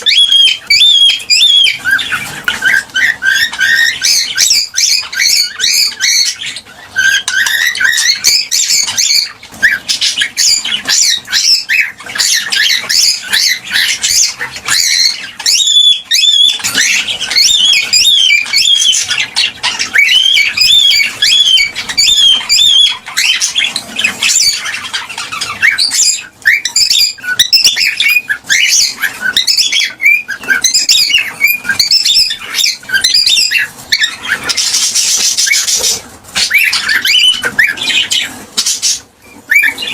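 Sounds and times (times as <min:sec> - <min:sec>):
cockatiels chirping and squawking: 0:00.0 - 0:39.9.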